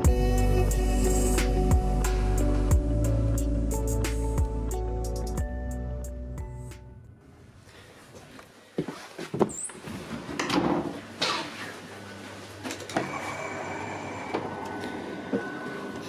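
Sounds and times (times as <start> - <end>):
steady high tones: 0.0 - 7.1.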